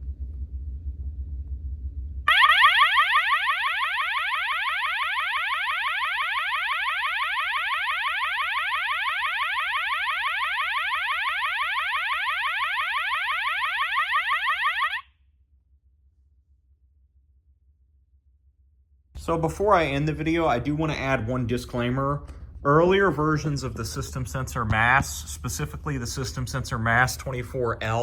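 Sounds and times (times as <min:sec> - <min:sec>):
fire alarm horn warble tone: 0:02.3 - 0:15.0.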